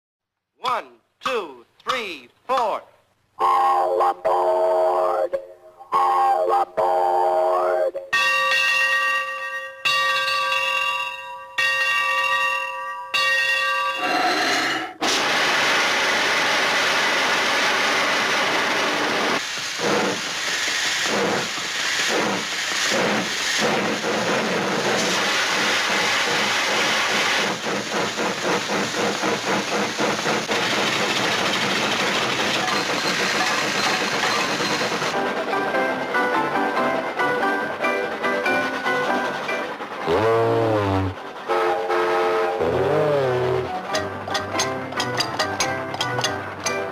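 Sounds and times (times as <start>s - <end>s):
steam locomotive whistle: 3.4s - 5.2s, 5.9s - 7.9s, 40.0s - 44.1s
steam hissing: 14.1s - 44.1s
steam engine chuffing: 15.0s - 46.8s.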